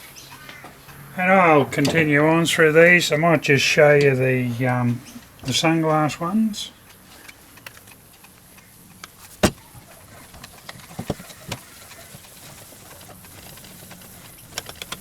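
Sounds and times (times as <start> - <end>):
plastic sunglasses clicking: 6.8 - 11.6.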